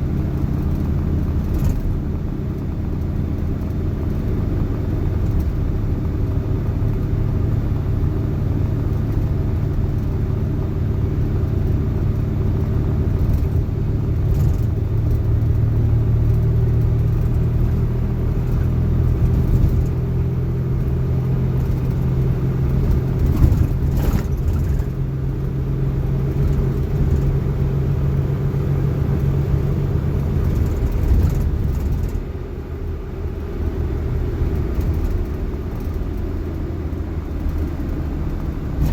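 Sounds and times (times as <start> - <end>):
car engine running: 0.0 - 38.9
short clatter: 22.8 - 25.0, 37.4 - 38.9.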